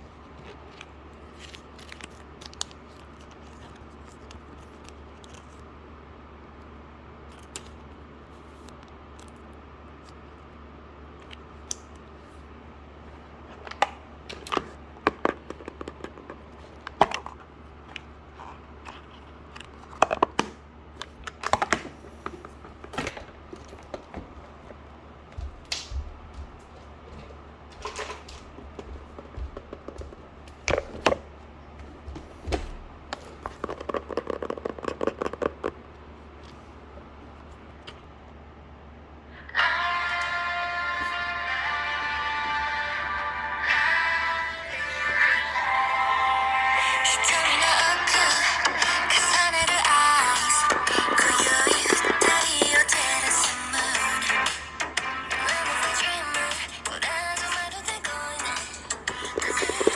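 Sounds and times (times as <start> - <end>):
packaging crinkling: 0.0 - 5.8, 46.8 - 54.2
steady low hum: 0.0 - 59.9
packaging clicks and taps: 32.5 - 35.8, 47.0 - 59.9.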